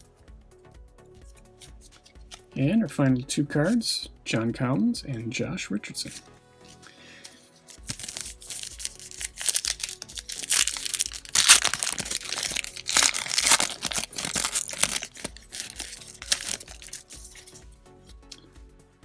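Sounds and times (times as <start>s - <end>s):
background music with low beat: 0.0s - 19.0s
wrapper being torn and crinkled: 7.6s - 17.6s.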